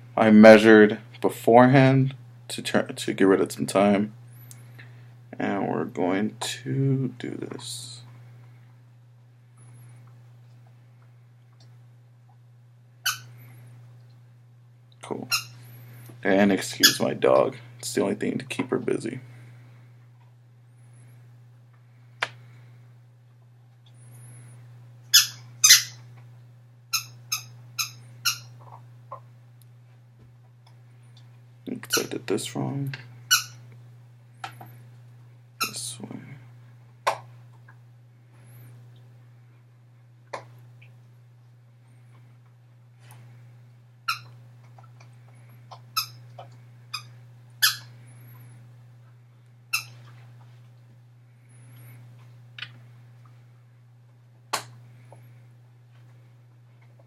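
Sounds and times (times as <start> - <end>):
squeaky toy squeaking: 13.1 - 13.3, 15.3 - 15.6, 25.2 - 26.0, 27.0 - 28.5, 33.3 - 33.6, 44.1 - 44.3, 47.0 - 47.9, 49.7 - 50.0.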